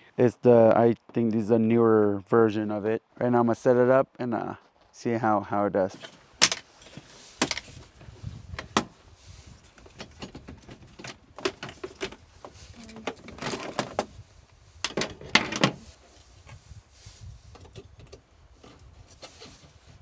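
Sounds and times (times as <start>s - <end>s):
scraping rustles: 5.9s - 20.0s
clicks and knocks of handling: 6.0s - 7.7s.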